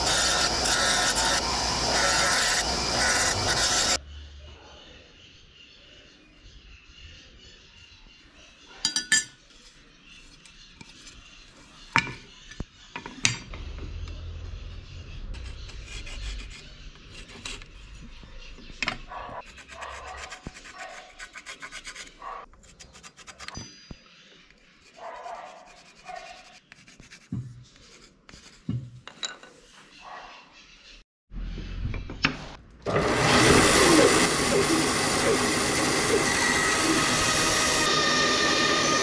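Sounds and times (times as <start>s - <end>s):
rubbing and scraping: 15.3s - 23.6s, 24.6s - 30.0s.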